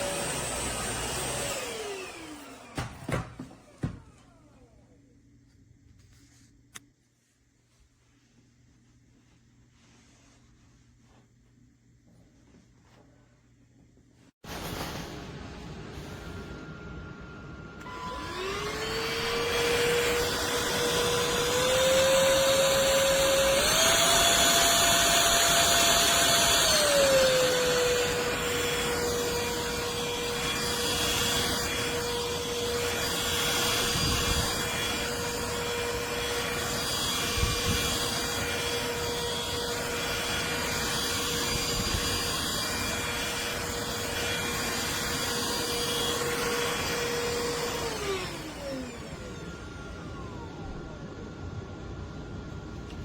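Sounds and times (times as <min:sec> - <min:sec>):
stick vacuum motor whine: 0:00.0 - 0:04.9, 0:15.7 - 0:53.0.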